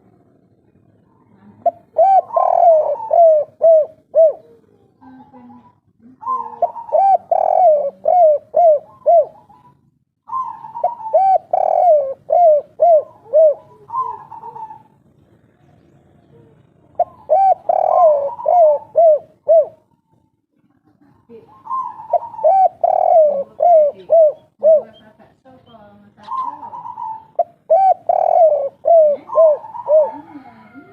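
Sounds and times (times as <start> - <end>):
dove cooing: 1.1 - 20.1, 21.2 - 25.3, 26.0 - 30.9.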